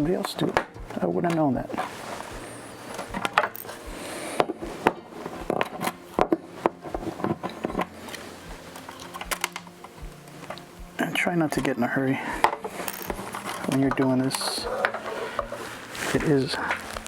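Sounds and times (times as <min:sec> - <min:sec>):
faint backing music: 0:00.0 - 0:17.0
small parts and tools clicking: 0:02.9 - 0:03.8, 0:05.4 - 0:10.6, 0:12.4 - 0:15.6.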